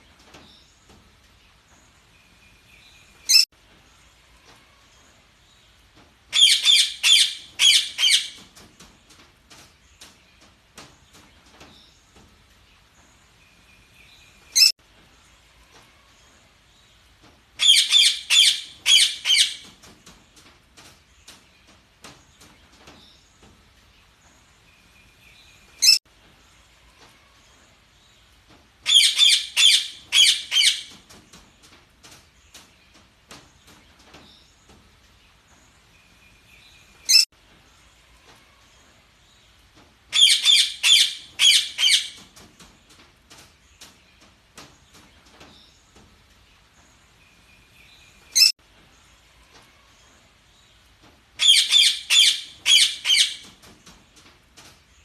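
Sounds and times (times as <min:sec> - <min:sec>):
budgerigars chirping: 0:40.2 - 0:42.2, 0:51.4 - 0:53.4.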